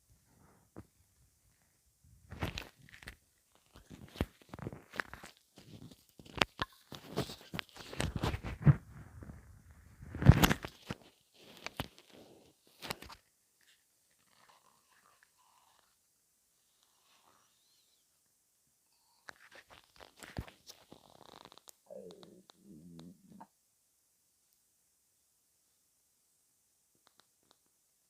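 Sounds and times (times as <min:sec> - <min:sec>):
stomach rumbling and gurgling: 0:00.4 - 0:18.0, 0:18.9 - 0:23.5.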